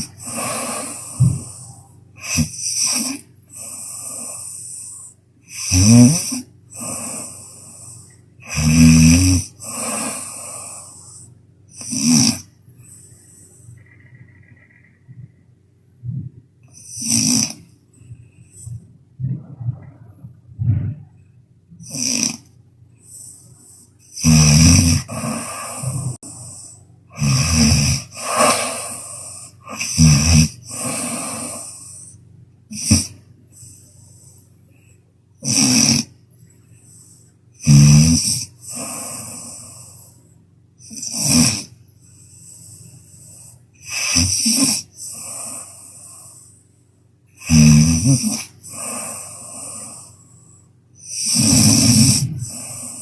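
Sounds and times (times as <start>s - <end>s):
breathy exhale: 0.0s - 2.0s, 6.8s - 8.2s, 9.6s - 11.4s, 25.0s - 26.9s, 28.0s - 29.8s, 30.7s - 32.2s, 36.7s - 37.4s, 38.6s - 40.3s, 42.0s - 43.7s, 45.0s - 46.7s, 48.5s - 50.8s
harsh rattling snore: 0.0s - 12.5s, 16.7s - 17.7s, 21.8s - 34.4s, 35.4s - 36.2s, 36.9s - 40.2s, 40.8s - 46.6s, 47.4s - 50.4s, 51.0s - 53.0s.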